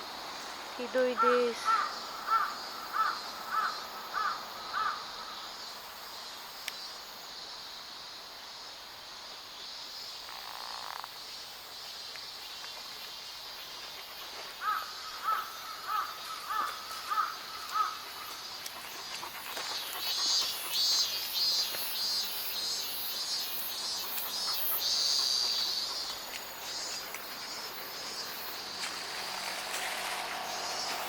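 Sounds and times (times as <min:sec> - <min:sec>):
crow cawing: 0:01.2 - 0:05.1, 0:14.6 - 0:18.0.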